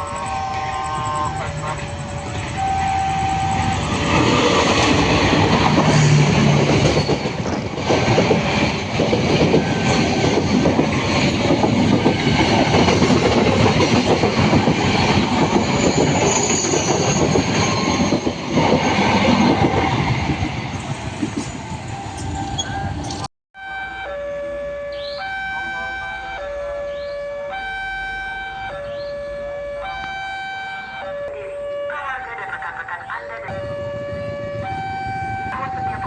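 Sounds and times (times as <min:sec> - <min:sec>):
crossing siren warning tone: 0:00.0 - 0:07.8, 0:08.7 - 0:10.6, 0:14.8 - 0:20.8, 0:21.4 - 0:36.0
train wheels clattering on rails: 0:00.0 - 0:23.3.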